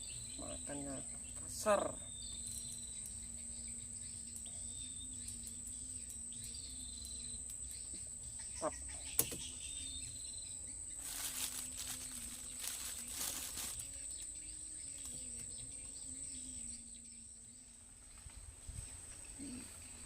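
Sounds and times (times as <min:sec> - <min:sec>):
insects trilling: 0:00.0 - 0:20.0
rustling: 0:11.0 - 0:14.4.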